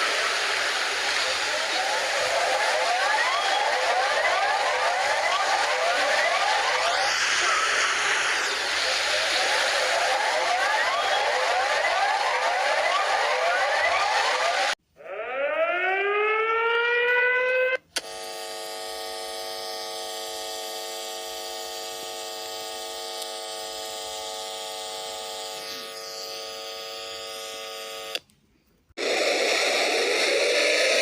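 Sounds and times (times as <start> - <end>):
siren winding up: 0.0 - 28.2
steady buzzing alarm tone: 1.8 - 7.3, 9.2 - 28.2.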